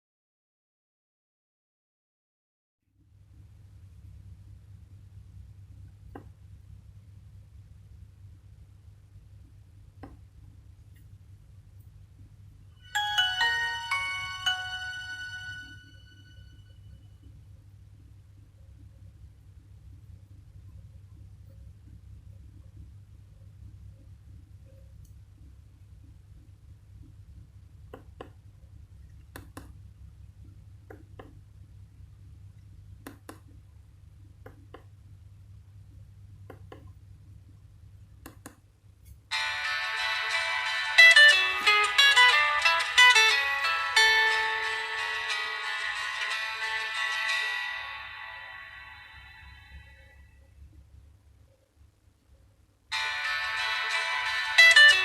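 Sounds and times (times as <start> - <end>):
low steady hum: 3.0 - 55.0
chime-like phone ringtone: 12.8 - 16.8, 39.3 - 49.6, 52.9 - 55.0.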